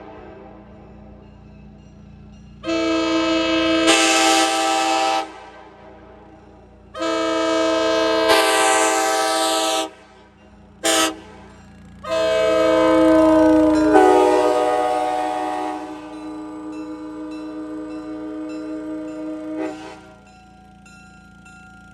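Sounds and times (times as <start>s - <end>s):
air horn chord blasts: 2.6s - 5.4s, 7.0s - 9.9s, 10.8s - 11.3s, 12.0s - 20.2s.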